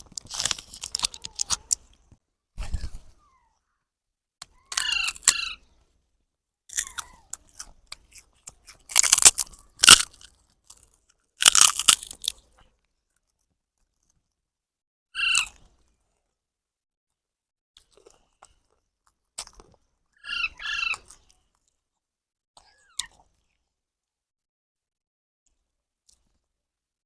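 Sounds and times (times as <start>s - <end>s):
crunching: 0.0s - 2.2s, 4.7s - 5.4s, 6.7s - 14.2s
baby parrot calling: 4.6s - 5.6s, 15.2s - 15.5s, 20.2s - 21.0s.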